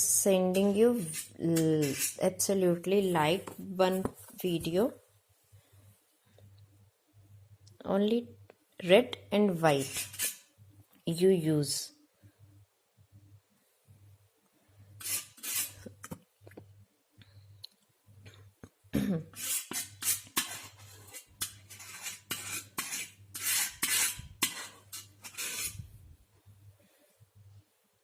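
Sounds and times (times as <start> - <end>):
painting knife scraping on palette: 0.5 - 2.4, 9.8 - 10.5, 15.0 - 16.2, 19.3 - 25.9.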